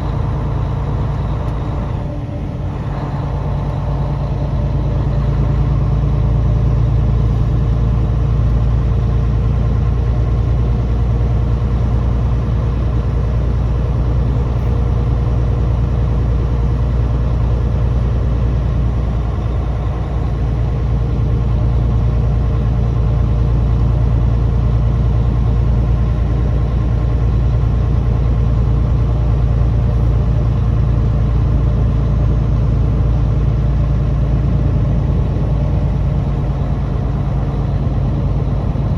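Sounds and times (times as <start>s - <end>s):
truck diesel engine droning: 0.0s - 38.9s.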